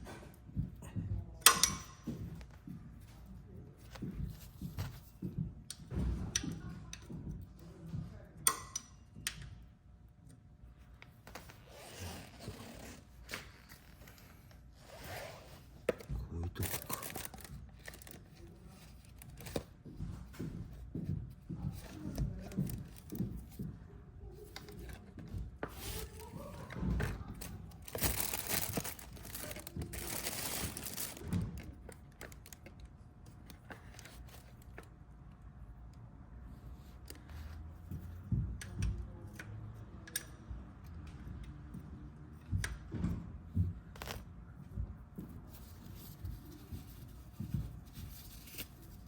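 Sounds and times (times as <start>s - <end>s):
tools clicking and knocking: 1.4s - 2.6s, 8.5s - 9.6s.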